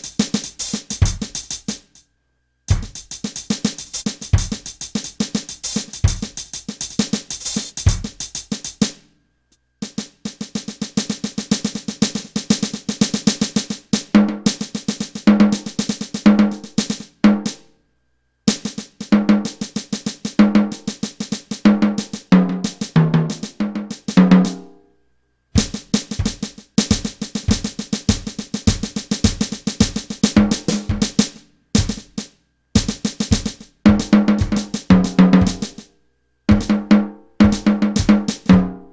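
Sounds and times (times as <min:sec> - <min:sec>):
electronic drum kit groove: 0:00.0 - 0:02.0, 0:02.7 - 0:09.0, 0:09.8 - 0:17.1, 0:25.6 - 0:35.9, 0:36.5 - 0:38.7.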